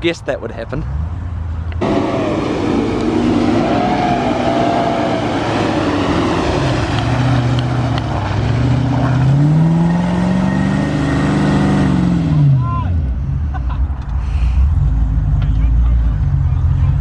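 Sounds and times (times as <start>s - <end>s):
off-road vehicle engine revving: 1.7s - 13.4s.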